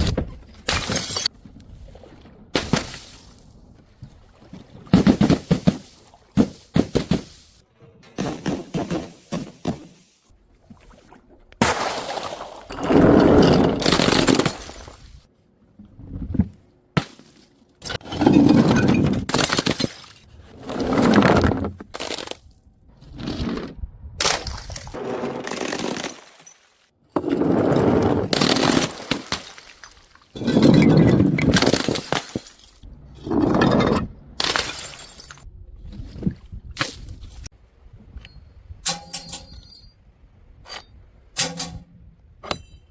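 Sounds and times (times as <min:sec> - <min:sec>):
glass bottles shattering: 0:00.7 - 0:01.3, 0:28.4 - 0:32.8, 0:33.4 - 0:35.5.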